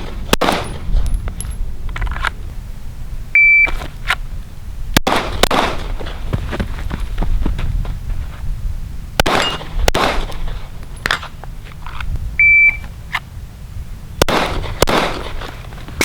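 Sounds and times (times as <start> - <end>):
pistol shots: 0.0 - 0.9, 5.0 - 6.1, 9.2 - 10.5, 14.2 - 15.5
shot timer beep: 3.4 - 3.7, 12.4 - 12.8.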